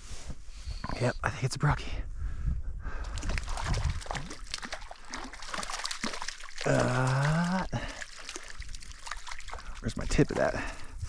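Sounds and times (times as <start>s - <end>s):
water trickling and splashing: 3.1s - 11.0s.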